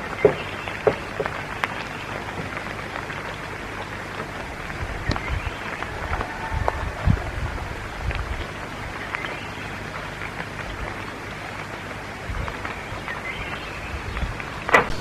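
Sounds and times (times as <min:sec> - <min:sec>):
steady rain: 0:00.0 - 0:15.0
faint taps: 0:00.2 - 0:01.8.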